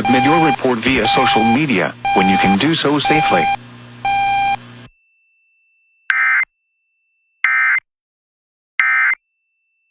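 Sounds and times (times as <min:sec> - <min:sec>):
buzzy digital data tones: 0:00.0 - 0:04.6.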